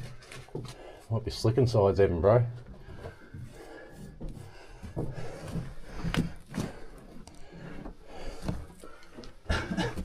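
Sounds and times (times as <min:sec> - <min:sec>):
footsteps on rocky floor: 0:02.6 - 0:10.0.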